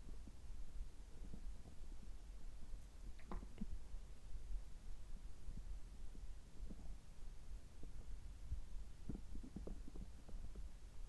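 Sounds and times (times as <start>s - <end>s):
stomach rumbling: 9.0s - 10.7s
stomach gurgle: 9.1s - 10.6s.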